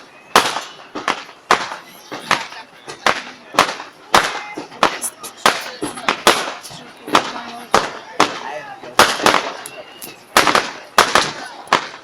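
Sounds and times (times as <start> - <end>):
fireworks bursting: 0.0 - 12.0.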